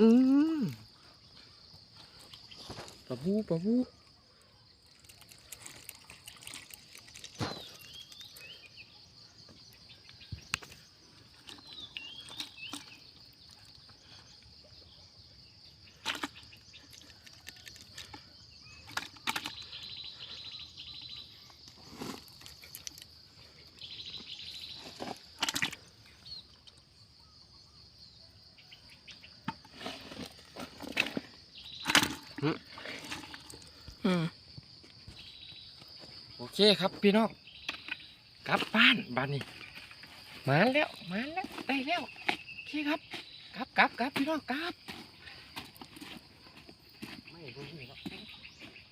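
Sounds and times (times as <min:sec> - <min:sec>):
insect drone: 0:00.0 - 0:48.9
bird chirps: 0:06.6 - 0:29.7, 0:31.2 - 0:34.0, 0:35.1 - 0:45.6, 0:47.0 - 0:48.9.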